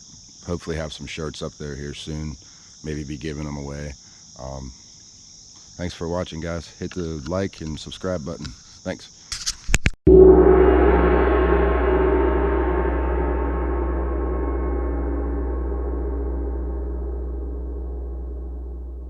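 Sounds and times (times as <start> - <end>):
deep low hum: 10.1 - 19.0
gong strike ringing: 10.1 - 19.0.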